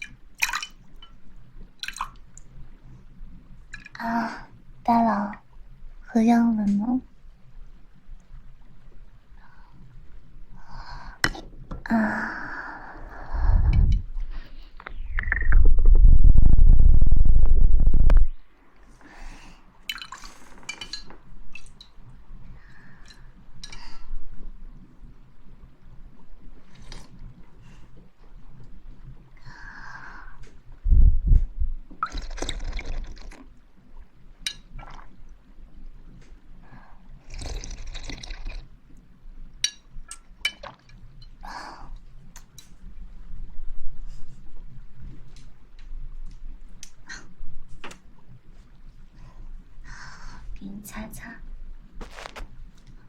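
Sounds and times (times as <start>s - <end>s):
liquid drips and swishes: 0.0s - 11.8s, 18.3s - 50.6s
liquid splashing: 32.0s - 33.5s.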